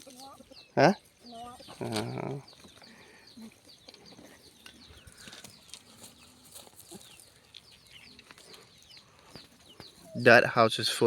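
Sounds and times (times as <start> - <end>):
birds chirping faintly: 0.0 - 11.0.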